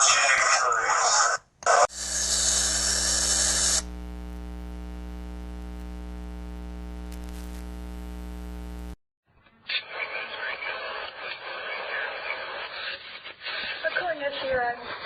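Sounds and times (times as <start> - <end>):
electrical hum: 1.8 - 9.0
loud hiss: 1.9 - 3.9.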